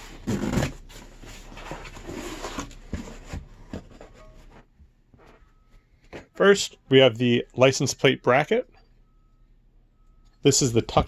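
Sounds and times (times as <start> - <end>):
cardboard box being opened: 0.0 - 4.5
rustling and scraping of parts: 0.0 - 6.4.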